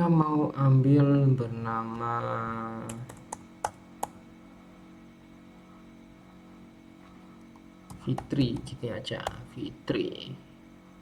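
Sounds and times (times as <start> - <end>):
faint steady hum: 0.0 - 11.0
computer keyboard keystrokes: 2.9 - 4.2, 7.9 - 9.4.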